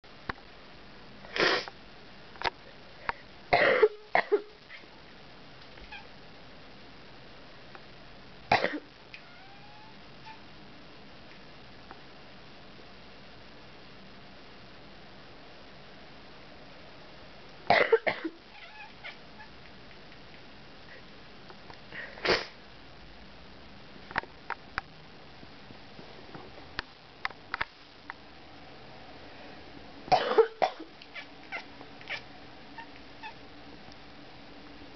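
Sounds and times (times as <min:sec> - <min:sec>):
person coughing: 0:03.6 - 0:04.5, 0:08.5 - 0:08.8, 0:17.7 - 0:18.3, 0:30.1 - 0:30.9
person huffing breath: 0:21.9 - 0:22.6.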